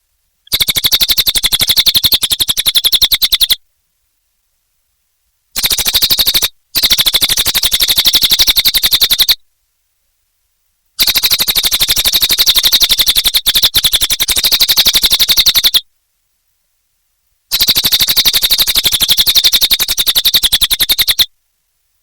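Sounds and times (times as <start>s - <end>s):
bird trilling: 0.5s - 3.6s, 5.6s - 9.4s, 11.0s - 15.8s, 17.5s - 21.3s.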